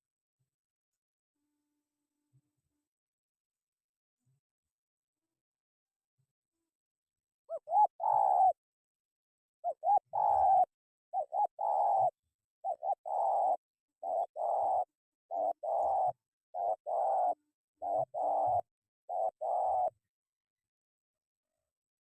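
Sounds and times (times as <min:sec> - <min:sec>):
dove cooing: 0:07.5 - 0:08.6, 0:09.6 - 0:20.0.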